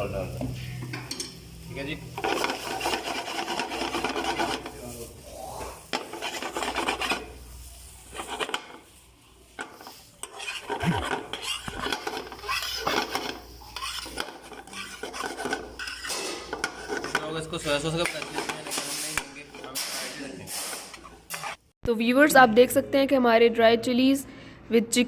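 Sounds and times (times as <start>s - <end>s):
spatula scraping rice in pan: 2.2s - 5.0s, 5.8s - 7.4s, 8.0s - 21.6s.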